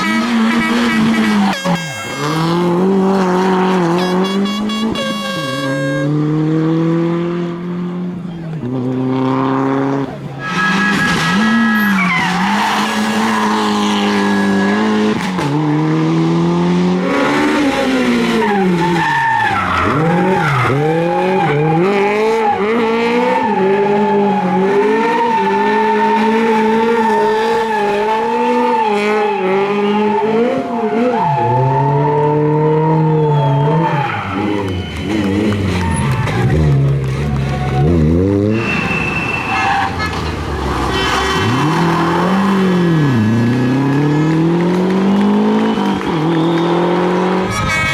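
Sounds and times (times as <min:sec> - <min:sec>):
rally car engine revving hard: 0:00.0 - 0:04.2, 0:06.0 - 0:39.0, 0:40.4 - 0:47.9
tyres squealing: 0:33.0 - 0:44.6.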